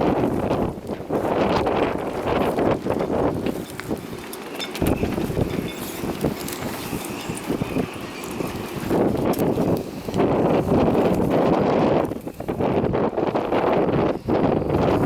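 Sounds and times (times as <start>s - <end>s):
gusty wind buffeting microphone: 0.0s - 15.0s.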